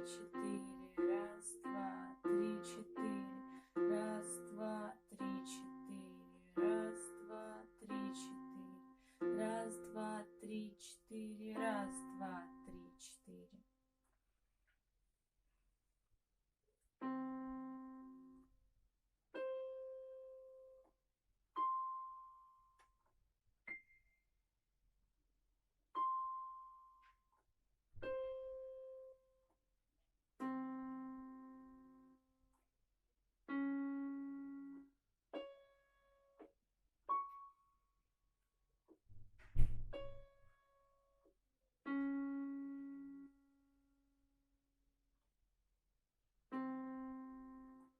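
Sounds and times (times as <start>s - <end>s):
piano notes and chords: 0.0s - 13.1s, 17.0s - 18.5s, 19.3s - 20.9s, 21.6s - 22.9s, 25.9s - 27.2s, 28.0s - 29.3s, 30.4s - 32.2s, 33.5s - 36.5s, 37.1s - 37.7s, 41.8s - 43.4s, 46.5s - 47.9s.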